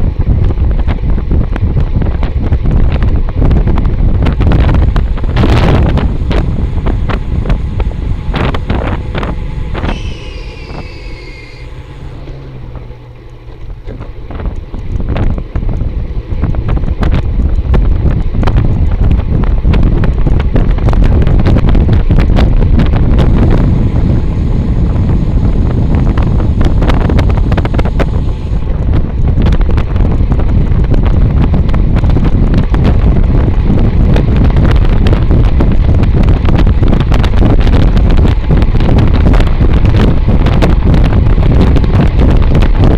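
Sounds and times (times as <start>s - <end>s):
wind buffeting microphone: 0.0s - 42.9s
short high squeal: 8.4s - 12.7s.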